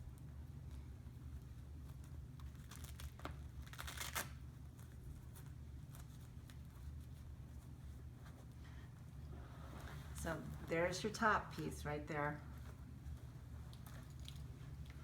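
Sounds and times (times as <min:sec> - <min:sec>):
steady low hum: 0:00.0 - 0:15.0
rustling: 0:00.6 - 0:15.0
velcro straps ripping open: 0:02.0 - 0:06.9.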